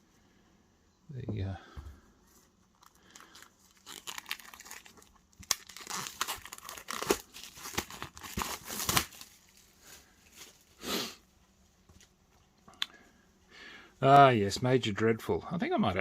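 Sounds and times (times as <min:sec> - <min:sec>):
plastic wrapping crinkling and tearing: 0:02.7 - 0:10.7
soft rustle: 0:09.3 - 0:12.6.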